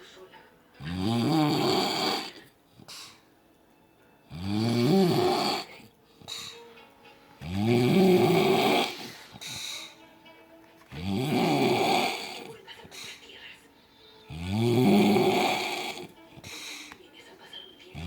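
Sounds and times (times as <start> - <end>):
man snoring: 0.8 - 2.5, 4.3 - 5.9, 7.4 - 9.6, 10.9 - 12.6, 14.3 - 16.2
quiet breathing: 0.8 - 3.5, 4.3 - 7.6, 8.2 - 10.2, 10.8 - 18.0.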